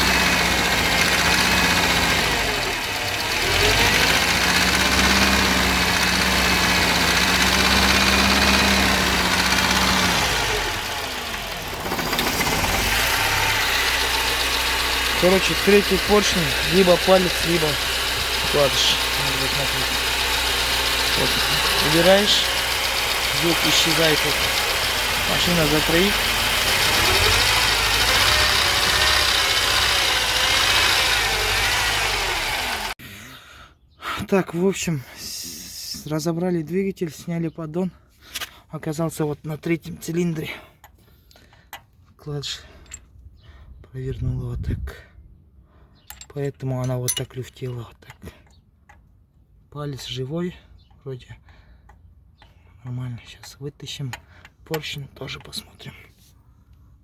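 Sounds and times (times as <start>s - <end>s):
car engine running with a knock: 0.0s - 32.9s.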